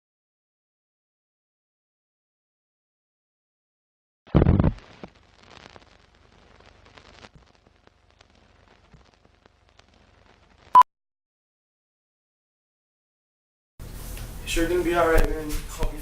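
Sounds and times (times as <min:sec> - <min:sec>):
faint crackling: 0:04.3 - 0:10.8.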